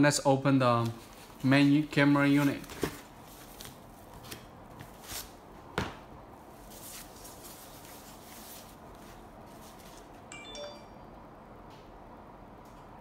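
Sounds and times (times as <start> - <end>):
packaging rustling: 2.3 - 5.4.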